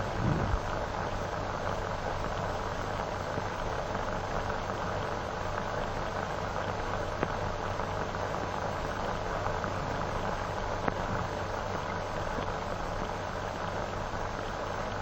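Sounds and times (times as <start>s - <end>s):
film soundtrack hiss and hum: 0.0s - 15.0s
faint crackling clicks: 7.1s - 7.4s, 10.8s - 13.2s.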